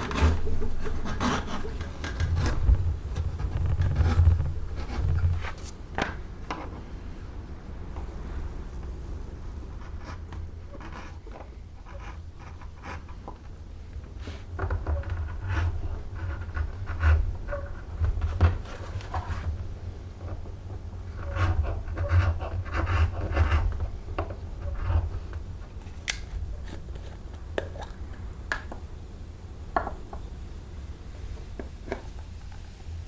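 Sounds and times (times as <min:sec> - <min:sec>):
hand tool scraping leather: 0:00.0 - 0:05.8.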